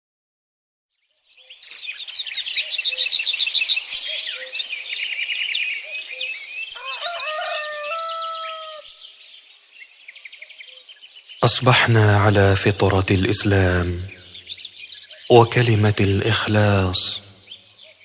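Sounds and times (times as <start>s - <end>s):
small birds chirping: 0.9s - 18.0s
rooster crowing: 6.7s - 9.0s.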